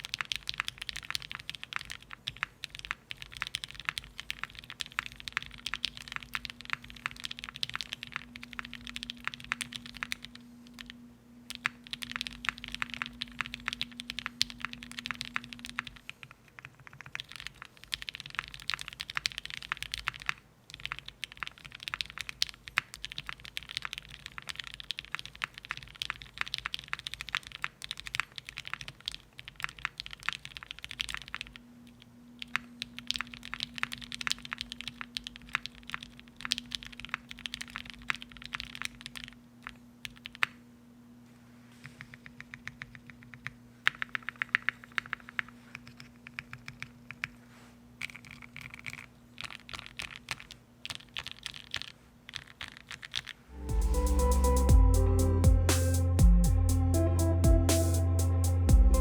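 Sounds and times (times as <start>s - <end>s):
mechanical keyboard typing: 0.0s - 40.6s, 42.0s - 47.4s, 48.0s - 54.5s.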